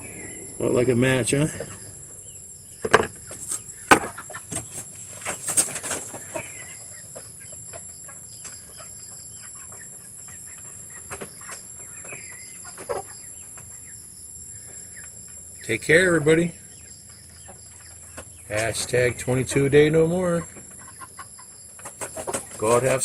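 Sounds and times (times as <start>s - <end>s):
high-pitched insect drone: 0.0s - 4.9s
sharp pops: 0.0s - 6.0s
chickens clucking: 0.0s - 23.0s.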